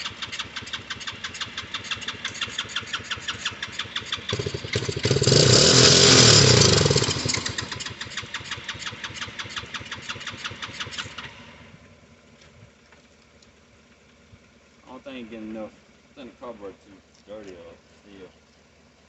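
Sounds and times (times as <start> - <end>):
small engine cranking: 0.0 - 11.7
engine sputter: 0.0 - 18.9.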